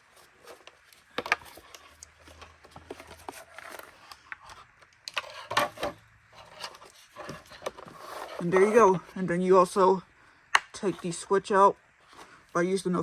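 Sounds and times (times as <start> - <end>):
plastic parts clicking and knocking: 0.5 - 8.8.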